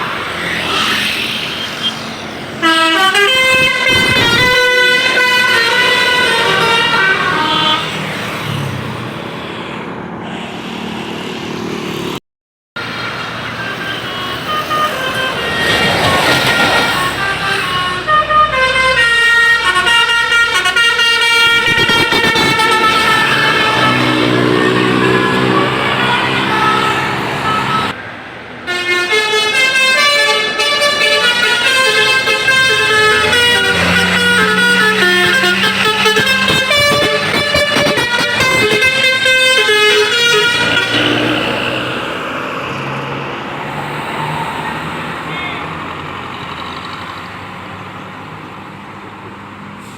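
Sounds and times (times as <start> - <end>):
engine and road noise: 0.0 - 12.2, 12.8 - 49.9
multi-tone bus horn tune: 2.5 - 8.2, 13.1 - 28.0, 28.7 - 42.1.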